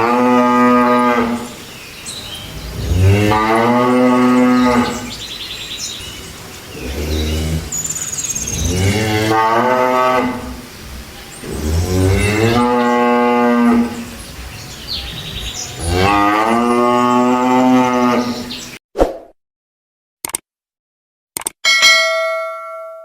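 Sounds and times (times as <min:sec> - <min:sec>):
cattle mooing: 0:00.0 - 0:01.5, 0:02.5 - 0:05.2, 0:06.8 - 0:07.8, 0:08.5 - 0:10.6, 0:11.4 - 0:14.1, 0:15.7 - 0:18.5.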